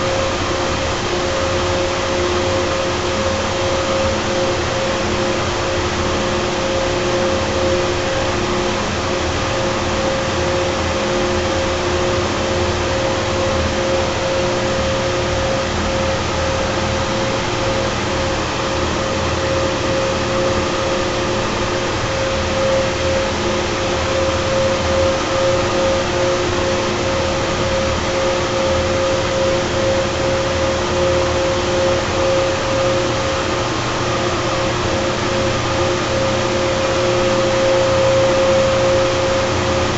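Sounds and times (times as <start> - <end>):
chiller compressor drone: 0.0 - 39.9
mid-pitched whine: 0.0 - 39.9.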